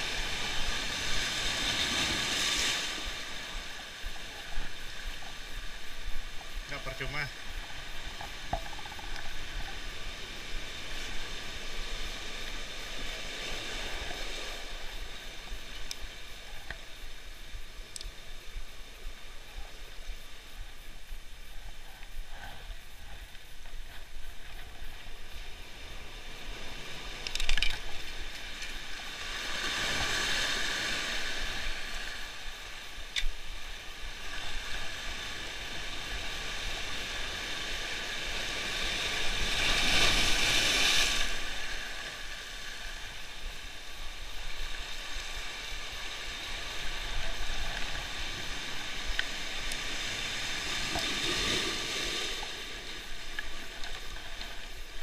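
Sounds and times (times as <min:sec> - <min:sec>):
sea waves washing on shore: 0:00.0 - 0:55.0
faint click: 0:15.7 - 0:16.0, 0:17.9 - 0:18.2, 0:33.1 - 0:33.4, 0:49.1 - 0:49.8.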